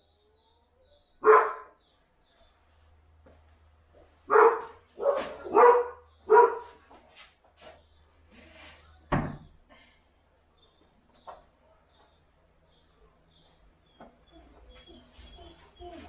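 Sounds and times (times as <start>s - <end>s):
dog barking: 1.2s - 1.8s, 4.3s - 6.8s.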